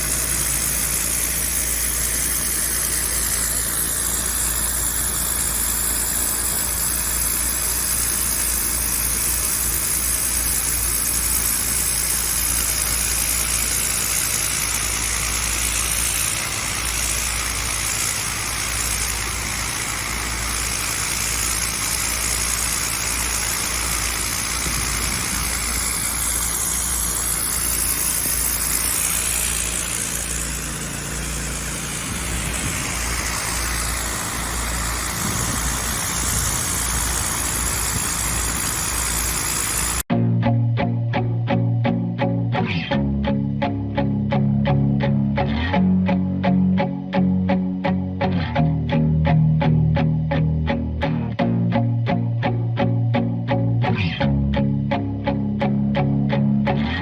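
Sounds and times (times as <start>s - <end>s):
high-pressure water spray hissing: 0.0s - 40.1s
pressure washer engine humming: 0.0s - 40.1s
music with a steady beat: 40.1s - 57.0s.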